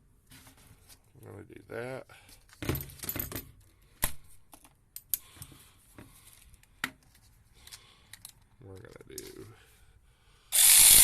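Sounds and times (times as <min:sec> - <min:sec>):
tools rattling: 0:02.5 - 0:03.7.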